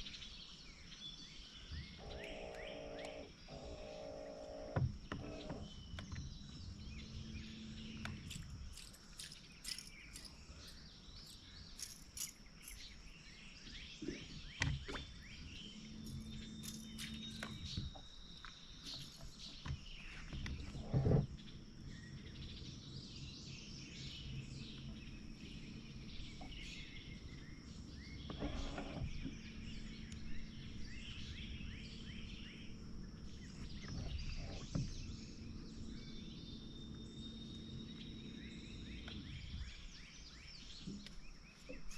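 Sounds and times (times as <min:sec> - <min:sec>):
low hum: 0:00.0 - 0:41.5
birds chirping and calling: 0:00.0 - 0:41.9.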